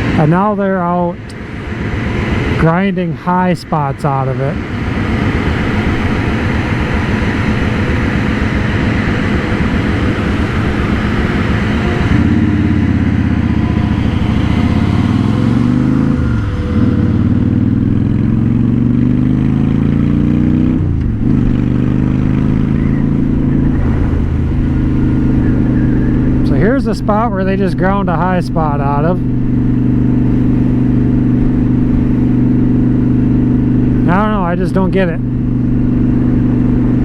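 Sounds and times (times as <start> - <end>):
motorcycle engine accelerating: 0.0 - 37.0
rough rushing noise: 20.7 - 36.2.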